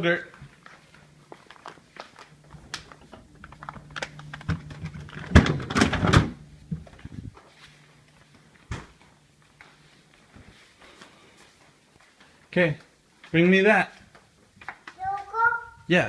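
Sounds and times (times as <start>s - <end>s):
low steady hum: 0.0s - 11.4s
groceries being handled: 0.6s - 6.0s.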